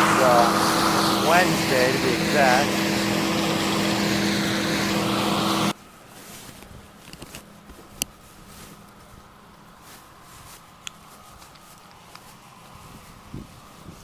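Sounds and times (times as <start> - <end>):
heavy machinery engine running: 0.0 - 5.8.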